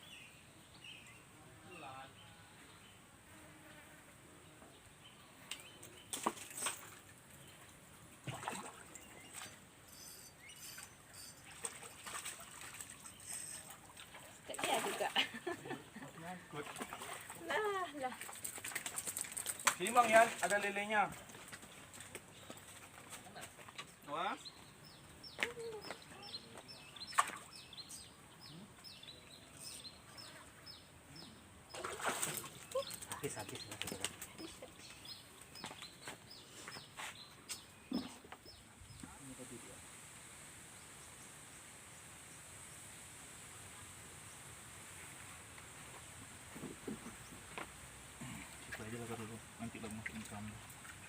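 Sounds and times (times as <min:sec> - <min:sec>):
water splashes and knocks: 0:06.1 - 0:07.4, 0:08.2 - 0:09.6, 0:11.4 - 0:15.2, 0:16.5 - 0:24.0, 0:26.6 - 0:27.6, 0:31.7 - 0:34.5, 0:45.6 - 0:48.9, 0:49.7 - 0:51.0
bird chirping: 0:09.0 - 0:11.6, 0:24.0 - 0:39.4
high chirps: 0:09.9 - 0:11.5.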